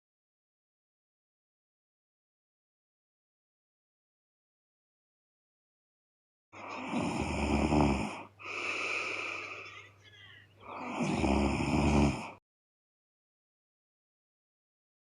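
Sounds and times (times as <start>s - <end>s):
woman snoring loudly: 6.6s - 9.6s, 10.6s - 12.4s
soft breath: 8.0s - 12.4s.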